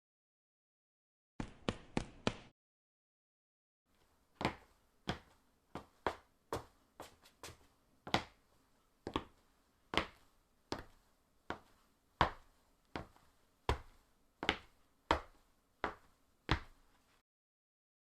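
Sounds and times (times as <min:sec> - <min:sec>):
hard-soled footsteps on concrete: 0:03.9 - 0:08.4, 0:09.0 - 0:17.1.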